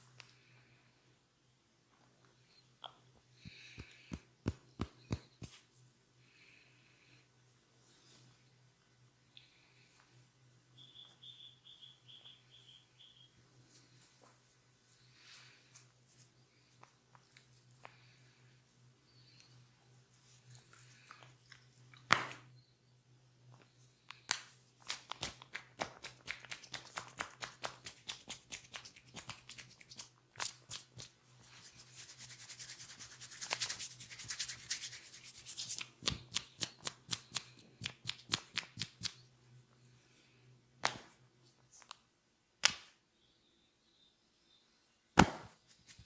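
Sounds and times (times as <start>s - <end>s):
hands slapping skin: 3.4s - 5.6s, 24.2s - 31.2s, 32.3s - 39.2s, 42.6s - 42.9s.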